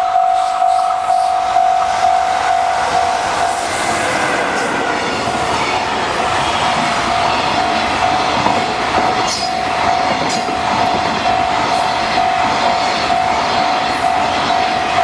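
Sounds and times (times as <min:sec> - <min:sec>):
crossing warning bell: 0:00.0 - 0:15.0
train wheels on rails: 0:00.0 - 0:15.0
clacks over rail joints: 0:04.2 - 0:14.2.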